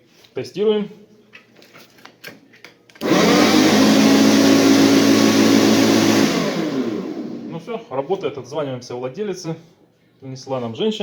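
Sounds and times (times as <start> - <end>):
electric lawnmower running: 3.0 - 7.5.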